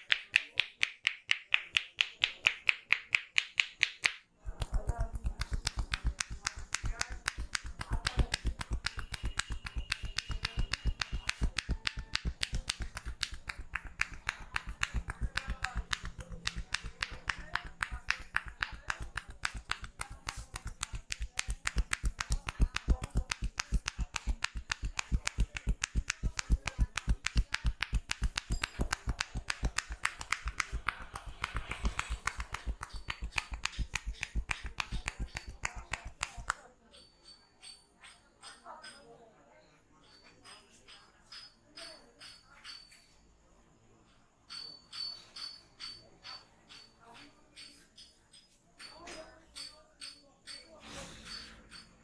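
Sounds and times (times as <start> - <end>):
hands slapping head rapidly: 0.0 - 36.7.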